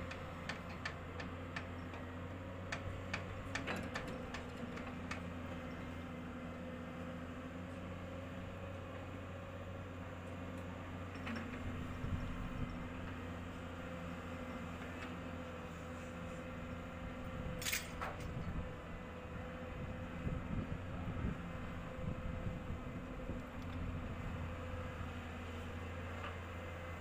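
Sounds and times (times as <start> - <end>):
excavator diesel engine running: 0.0 - 27.0.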